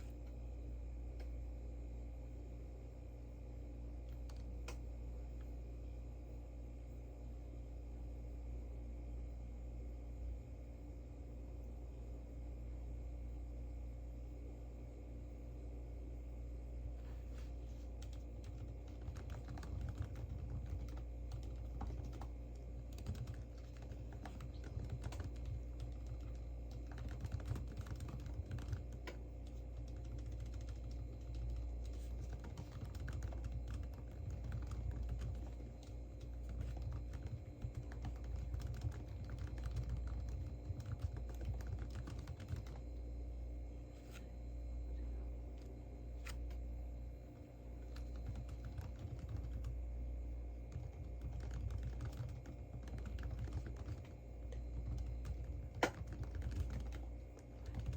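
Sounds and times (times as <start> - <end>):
low room hum: 0.0 - 57.9
computer keyboard key clicks: 54.8 - 57.0.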